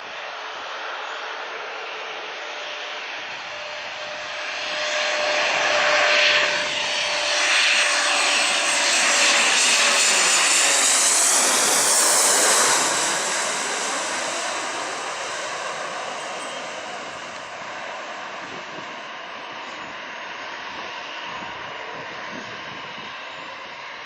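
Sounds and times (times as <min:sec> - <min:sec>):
jet airliner passing: 0:00.1 - 0:24.0.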